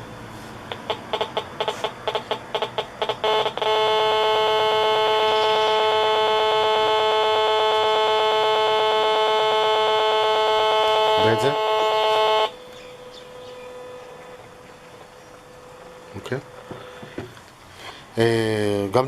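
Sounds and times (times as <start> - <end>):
rf meter buzz: 0.0 - 17.5.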